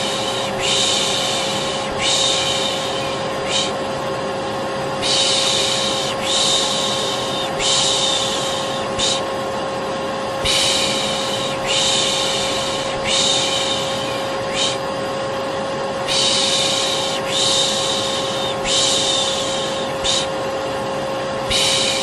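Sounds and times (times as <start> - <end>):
person shushing: 0.0 - 3.8, 5.0 - 9.3, 10.4 - 14.8, 16.1 - 20.4, 21.5 - 22.0
vacuum cleaner humming: 0.0 - 22.0.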